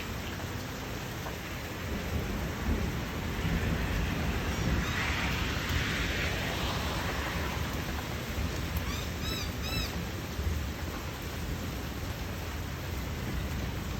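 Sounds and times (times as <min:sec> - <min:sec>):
steady rain: 0:00.0 - 0:13.9
low rumble: 0:02.0 - 0:08.8.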